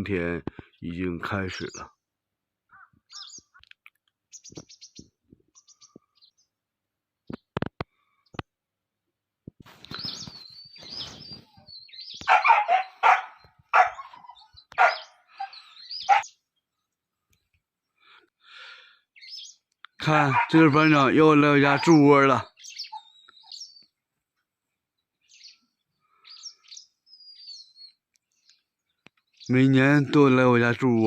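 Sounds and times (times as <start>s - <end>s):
small birds chirping: 0.1s - 8.8s, 9.7s - 31.0s
loud harsh bird calls: 2.7s - 3.6s, 9.8s - 16.7s, 18.0s - 24.0s, 25.2s - 30.5s.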